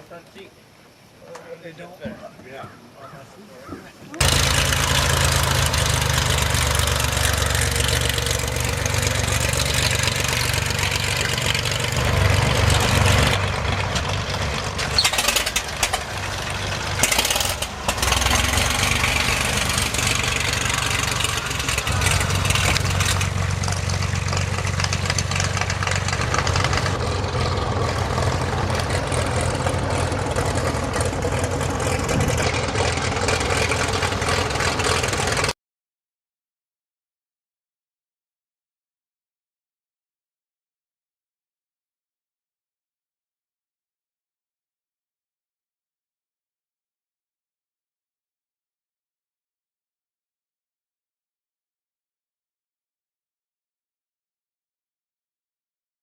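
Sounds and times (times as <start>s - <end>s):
vehicle engine drone: 4.2s - 35.6s.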